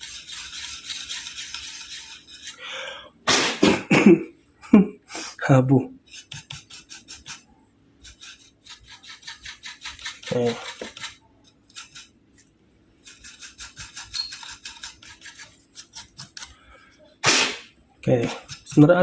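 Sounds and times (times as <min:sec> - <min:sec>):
brush scrubbing circuit board: 0:00.0 - 0:02.6, 0:06.0 - 0:12.2, 0:13.0 - 0:16.5, 0:18.1 - 0:19.0.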